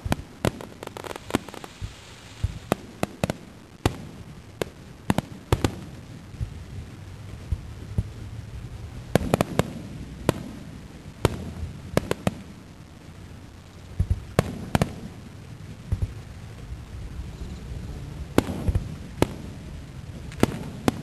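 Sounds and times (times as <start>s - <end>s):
fireworks bangs: 0.0s - 21.0s
low rumble: 15.2s - 20.7s.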